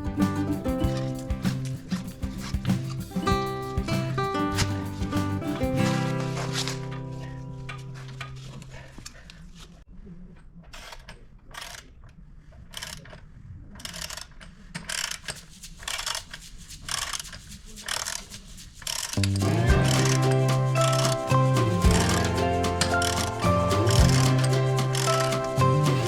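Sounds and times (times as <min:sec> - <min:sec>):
background music: 0:00.0 - 0:08.3, 0:19.2 - 0:26.0.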